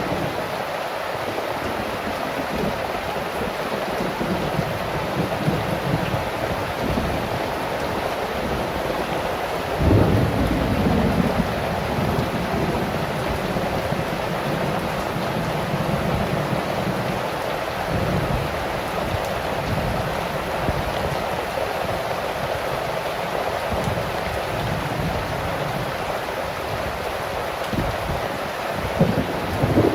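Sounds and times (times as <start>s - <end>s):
heavy rain falling: 0.0s - 29.9s
thunder boom and rumble: 9.8s - 12.8s.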